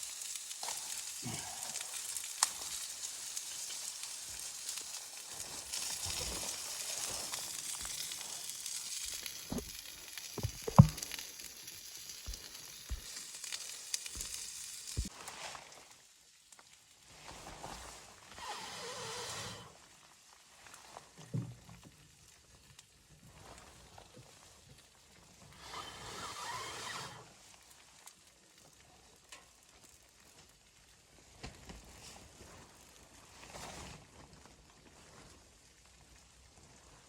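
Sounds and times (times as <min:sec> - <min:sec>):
food sizzling in a pan: 0:00.0 - 0:15.4
sharp knocks: 0:10.4 - 0:11.0.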